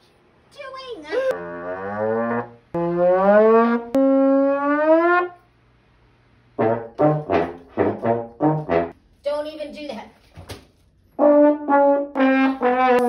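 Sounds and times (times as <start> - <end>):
trombone sliding notes: 1.3 - 5.4, 6.6 - 9.0, 11.2 - 13.0.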